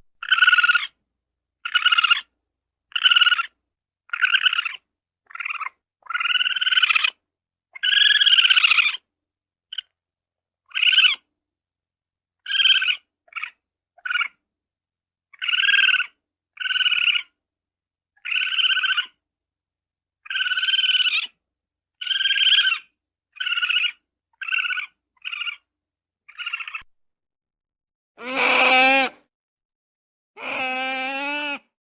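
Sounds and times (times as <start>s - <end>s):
ferret squealing: 0.2s - 0.9s, 1.6s - 2.2s, 3.0s - 3.5s, 4.1s - 7.1s, 7.8s - 9.0s, 18.2s - 19.1s, 20.2s - 21.3s, 22.0s - 22.8s, 23.4s - 25.6s, 26.3s - 26.9s, 28.2s - 29.2s, 30.4s - 31.6s.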